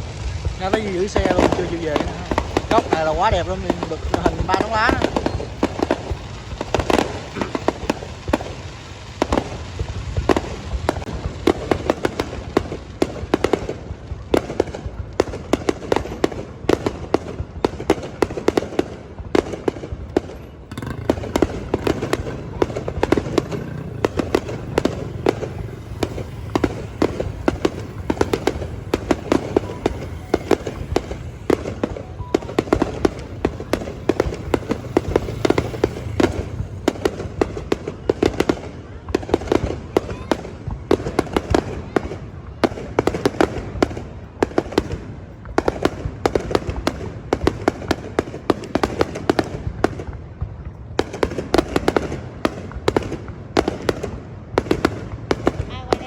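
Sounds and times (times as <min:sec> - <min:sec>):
fireworks bursting: 0:00.0 - 0:56.0.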